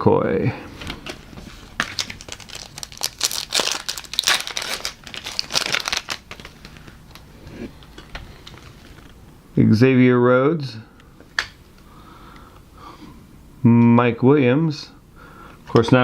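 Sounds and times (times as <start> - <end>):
card pack wrapper crinkling and tearing: 1.7 - 9.2.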